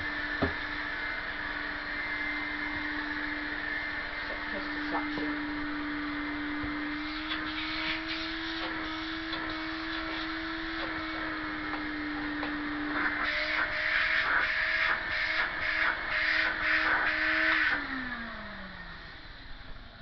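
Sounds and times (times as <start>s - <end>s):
vacuum cleaner motor hum: 0.0s - 20.0s
air rushing through hose: 6.9s - 10.4s.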